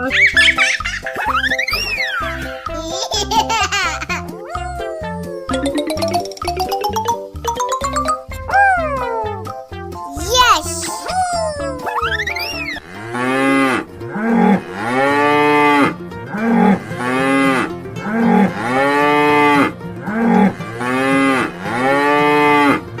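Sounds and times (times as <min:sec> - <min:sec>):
cow mooing: 0:12.8 - 0:22.8.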